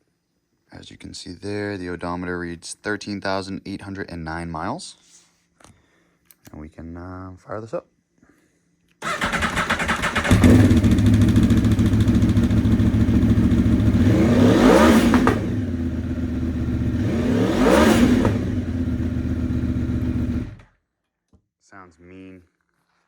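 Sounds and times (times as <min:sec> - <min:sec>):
motorcycle engine idling and revving: 0:09.0 - 0:20.7.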